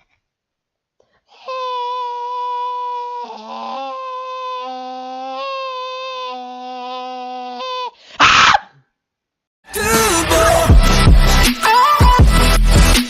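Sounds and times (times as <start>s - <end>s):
hip-hop music: 9.7s - 13.0s.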